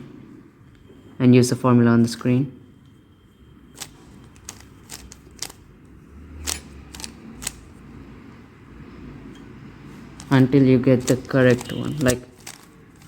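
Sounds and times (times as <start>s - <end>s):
plastic puzzle cube clicks: 11.0s - 12.7s.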